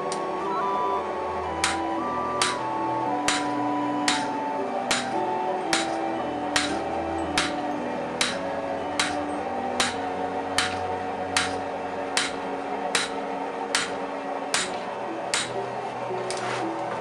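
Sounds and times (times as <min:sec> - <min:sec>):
background music: 0:00.0 - 0:17.0
hammer striking hot metal on anvil: 0:01.6 - 0:02.6, 0:03.2 - 0:15.6.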